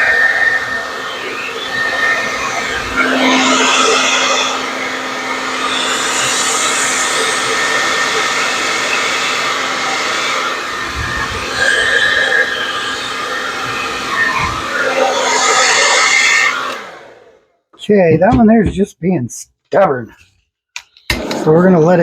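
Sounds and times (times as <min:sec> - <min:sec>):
blow dryer running: 0:00.7 - 0:17.2.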